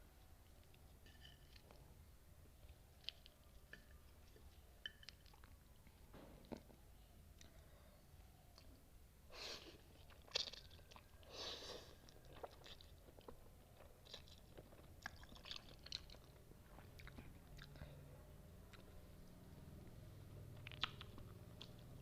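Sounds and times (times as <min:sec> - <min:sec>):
mouth chewing: 0:02.6 - 0:06.8, 0:09.8 - 0:18.0, 0:20.4 - 0:22.0
wet mouth clicks: 0:20.6 - 0:21.8.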